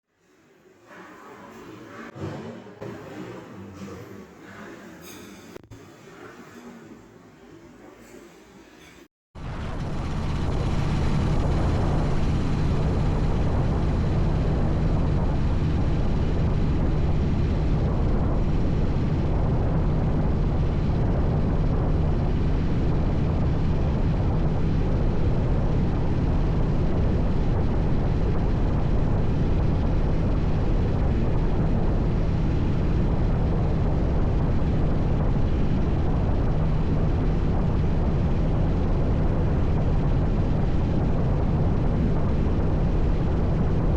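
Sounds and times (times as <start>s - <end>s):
vehicle engine droning: 9.4s - 23.4s.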